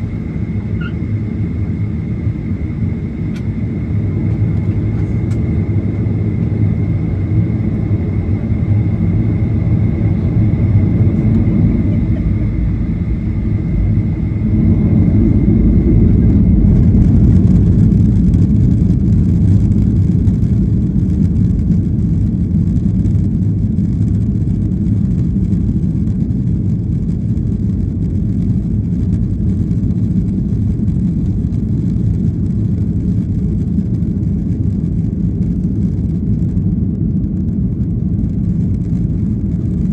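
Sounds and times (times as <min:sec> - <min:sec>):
thin high whine: 0:00.0 - 0:17.3
jet engine and runway rumble: 0:00.0 - 0:39.9.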